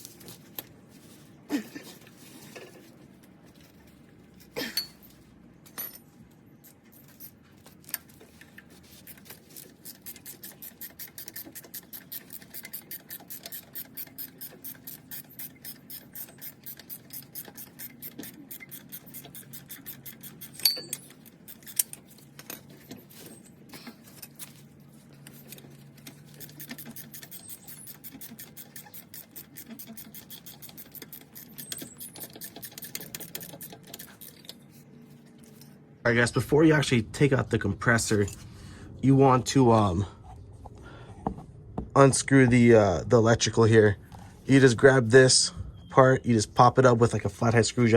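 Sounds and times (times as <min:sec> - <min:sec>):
ratchet wrench clicking: 0:09.7 - 0:22.0, 0:26.3 - 0:34.6.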